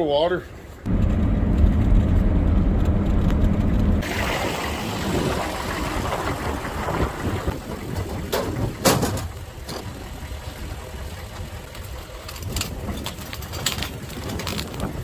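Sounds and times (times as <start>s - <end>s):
sharp knocks and clunks: 7.9s - 9.8s.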